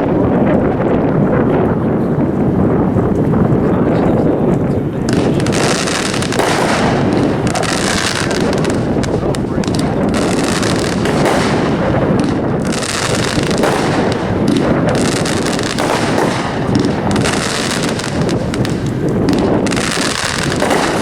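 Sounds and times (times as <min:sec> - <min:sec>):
crackling firework bursts: 0:04.2 - 0:21.0
fireworks launch thumps: 0:05.1 - 0:21.0.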